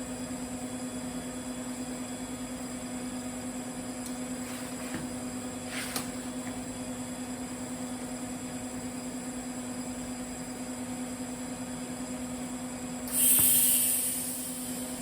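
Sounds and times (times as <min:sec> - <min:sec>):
electrical hum: 0:00.0 - 0:15.0
welding arc hissing: 0:13.1 - 0:15.0.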